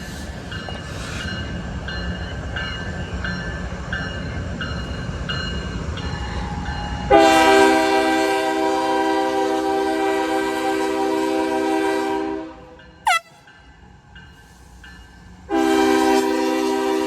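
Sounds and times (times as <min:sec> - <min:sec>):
freight train rumble: 0:00.0 - 0:17.0
locomotive air horn chord: 0:07.1 - 0:13.6, 0:15.5 - 0:17.0.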